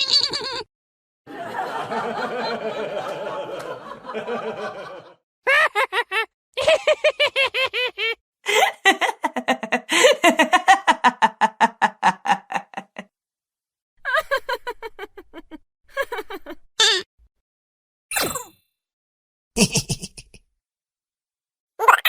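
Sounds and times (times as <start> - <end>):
laughter sound effects: 1.3 - 13.1, 14.1 - 16.7, 19.6 - 20.4.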